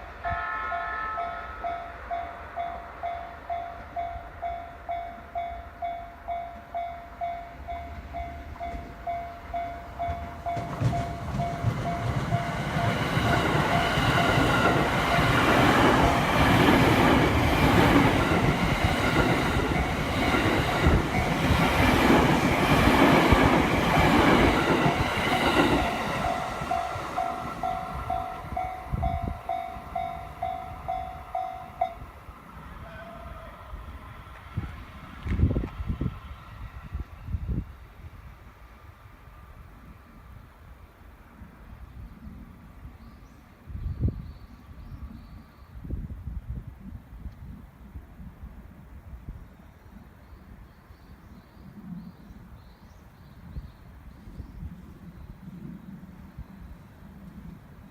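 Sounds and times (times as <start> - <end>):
train passing with wheel clatter: 0.0 - 43.7.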